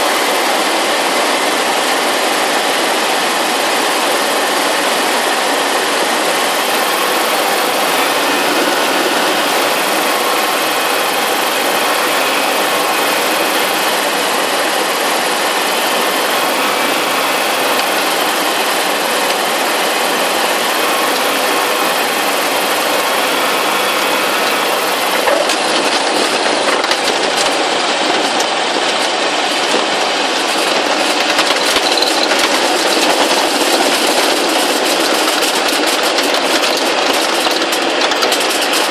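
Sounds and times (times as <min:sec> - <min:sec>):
aircraft engine and propeller drone: 0:00.0 - 0:38.9
rapid knocks and rattles: 0:24.8 - 0:38.9.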